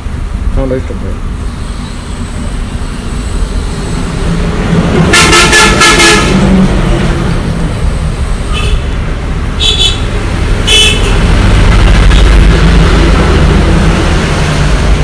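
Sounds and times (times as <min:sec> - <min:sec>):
road traffic rumbling: 0:00.0 - 0:15.0
vehicle horn toots: 0:05.1 - 0:06.5, 0:08.5 - 0:08.8, 0:09.6 - 0:10.0, 0:10.6 - 0:11.2.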